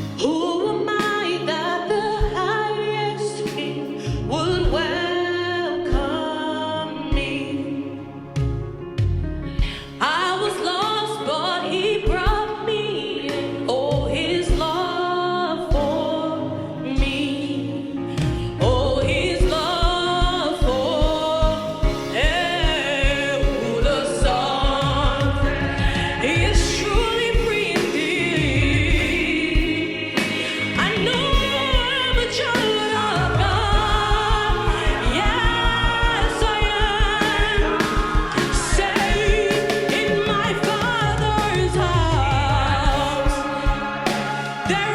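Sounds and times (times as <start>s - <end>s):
band playing: 3.4s - 10.0s, 18.2s - 44.9s
voices singing gospel: 9.6s - 44.9s
drum beat: 18.6s - 44.9s.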